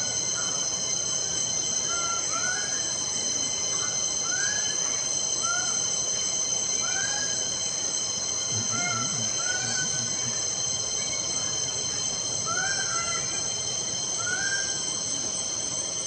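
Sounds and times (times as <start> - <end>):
high-pitched insect drone: 0.0 - 16.0
bird calling: 1.8 - 2.9, 5.4 - 5.8, 6.8 - 7.5, 8.5 - 10.4, 11.0 - 14.8.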